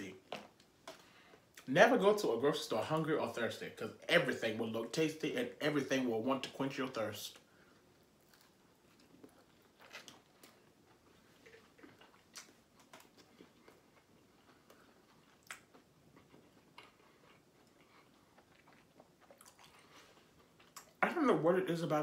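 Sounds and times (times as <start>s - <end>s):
person chewing: 7.4s - 21.0s.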